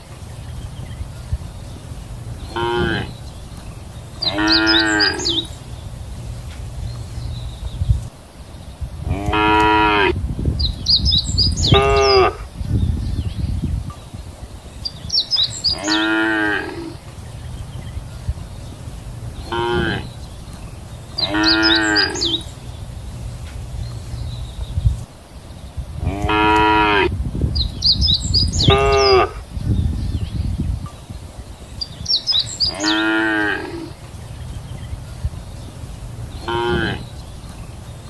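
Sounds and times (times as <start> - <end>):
cattle mooing: 2.5 - 3.2, 4.2 - 5.5, 15.7 - 17.0, 19.5 - 20.0, 21.2 - 22.4, 26.0 - 27.1, 32.7 - 34.0, 36.4 - 37.0.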